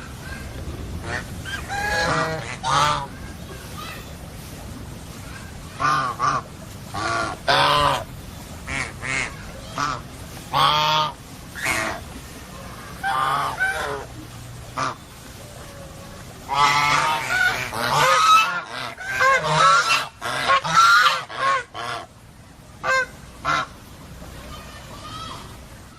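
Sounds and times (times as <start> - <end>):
geese honking: 1.0 - 3.1, 5.8 - 8.1, 8.7 - 22.1, 22.8 - 23.8.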